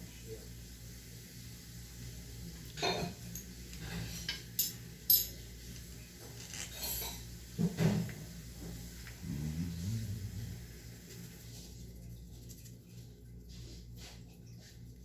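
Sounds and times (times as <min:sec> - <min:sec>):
tools clinking and knocking: 0:04.6 - 0:05.4
low steady hum: 0:08.4 - 0:15.0.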